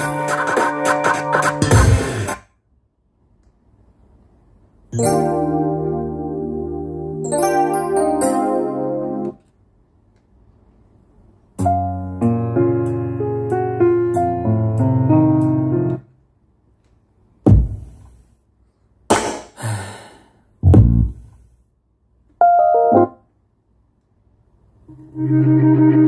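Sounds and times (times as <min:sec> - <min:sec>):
piano-led music: 0:04.9 - 0:09.4, 0:11.6 - 0:16.1, 0:22.4 - 0:23.2, 0:24.9 - 0:26.0.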